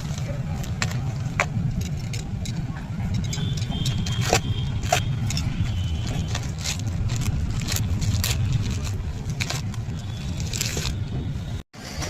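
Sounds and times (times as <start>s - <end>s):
steady low rumble: 0.0s - 11.6s
packaging rustling: 3.5s - 11.2s.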